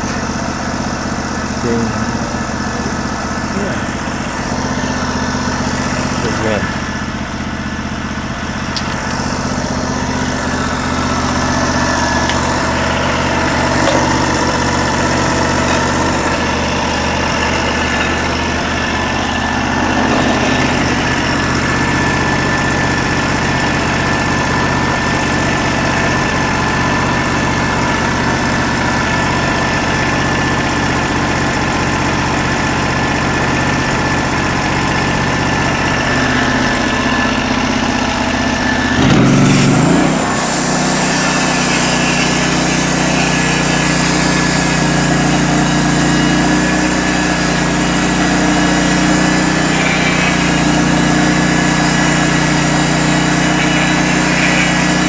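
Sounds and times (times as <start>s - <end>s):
sawmill engine running: 0.0s - 55.0s
band saw blade cutting wood: 8.5s - 24.4s, 38.6s - 55.0s.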